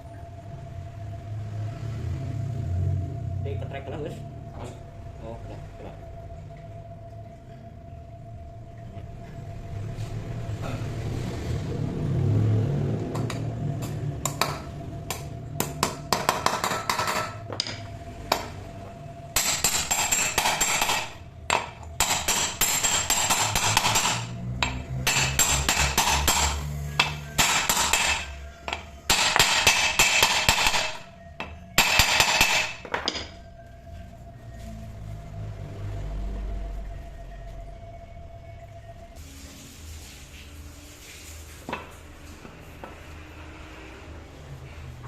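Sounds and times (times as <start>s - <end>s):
faint steady hum: 0.0s - 11.2s.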